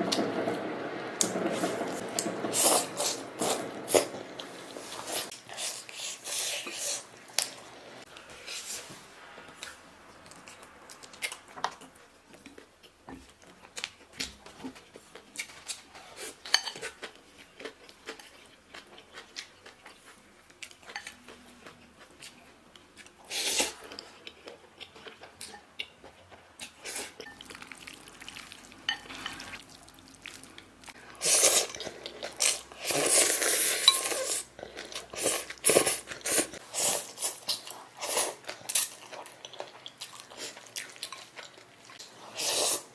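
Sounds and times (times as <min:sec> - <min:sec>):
chewing: 0:09.4 - 0:42.2.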